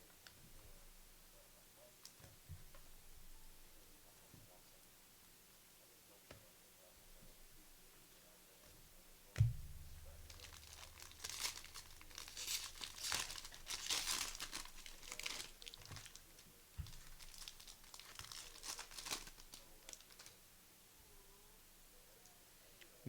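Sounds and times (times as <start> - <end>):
wrappers crinkling and tearing: 10.0 - 20.4.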